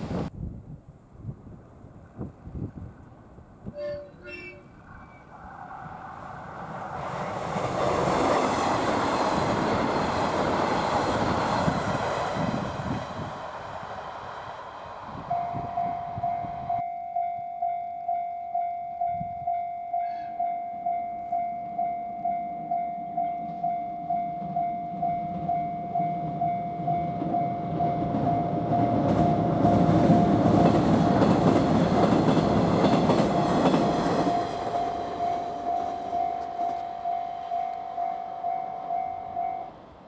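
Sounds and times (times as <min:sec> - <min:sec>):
diesel railcar passing: 0:00.0 - 0:00.3, 0:01.2 - 0:40.0
level crossing electronic alarm: 0:15.3 - 0:30.5.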